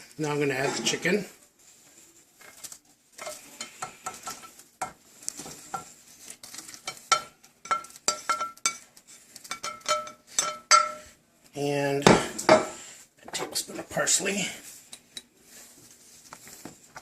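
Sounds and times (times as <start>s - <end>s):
spoon clinking against pot: 6.9s - 11.1s.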